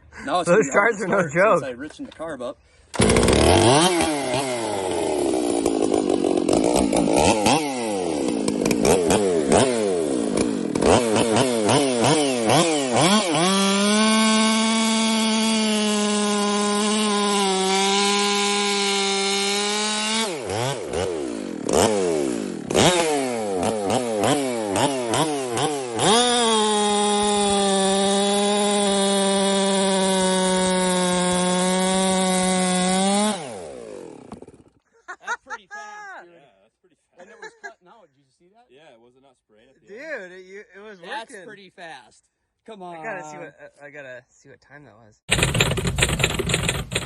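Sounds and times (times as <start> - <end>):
chainsaw engine revving: 2.9 - 34.8, 45.3 - 47.0.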